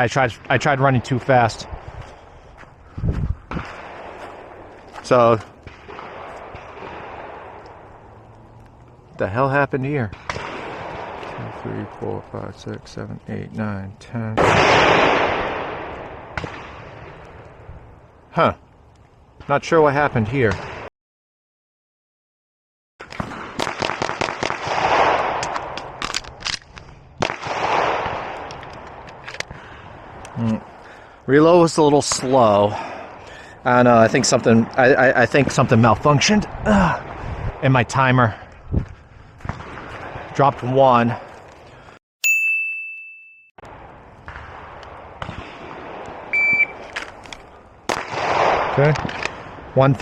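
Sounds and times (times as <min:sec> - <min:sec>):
pistol shots: 0:14.4 - 0:17.2, 0:23.1 - 0:26.2, 0:27.2 - 0:28.6, 0:47.9 - 0:49.4
shot timer beeping: 0:46.3 - 0:46.8.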